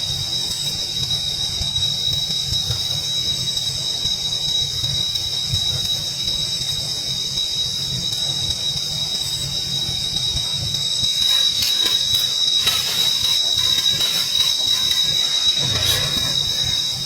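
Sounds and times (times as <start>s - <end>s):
hiss: 10.9s - 17.0s
short clicks and crackles: 11.1s - 17.0s.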